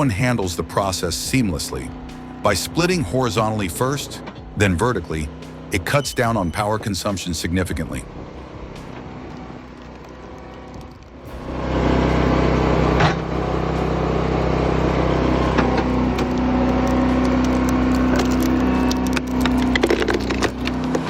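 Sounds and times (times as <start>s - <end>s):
machine motor running: 0.0s - 21.0s
wood cracking and splintering: 7.9s - 11.4s, 15.5s - 21.0s.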